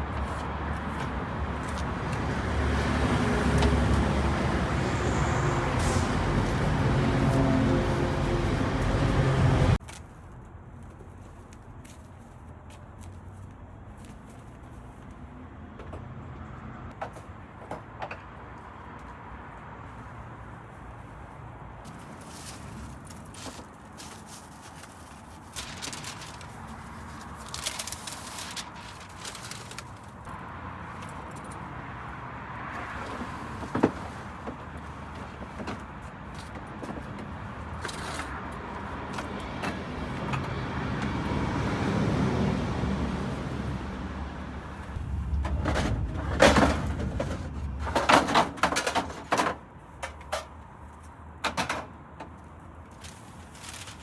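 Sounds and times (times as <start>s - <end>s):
vehicle passing: 0.0s - 9.8s, 37.5s - 48.7s
sharp knocks and clatter: 45.0s - 50.5s.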